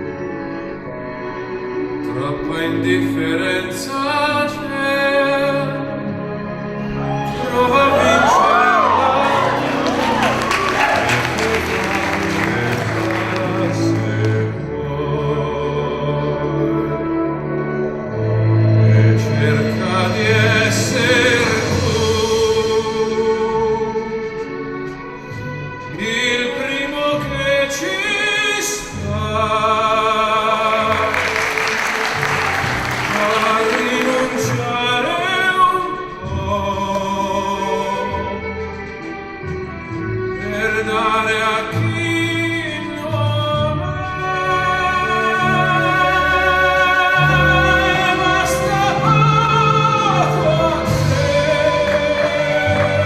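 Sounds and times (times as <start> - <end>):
operatic singing: 1.2 - 53.0
instrumental accompaniment: 6.2 - 15.0, 30.3 - 42.6.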